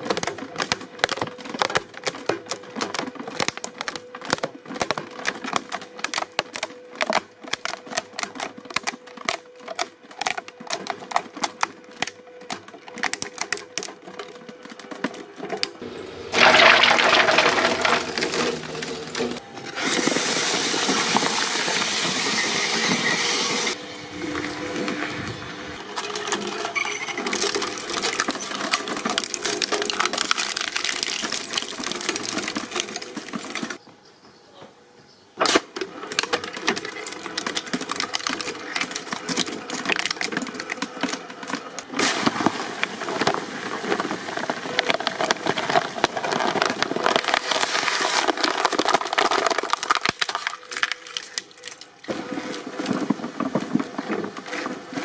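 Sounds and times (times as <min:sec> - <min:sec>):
shredding machine grinding: 0:15.5 - 0:33.8, 0:36.0 - 0:50.2, 0:52.1 - 0:55.0.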